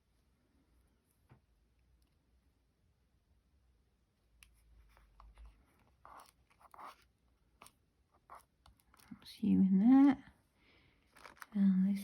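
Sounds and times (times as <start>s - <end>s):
paper and card rustling: 4.8s - 9.1s, 11.0s - 11.6s.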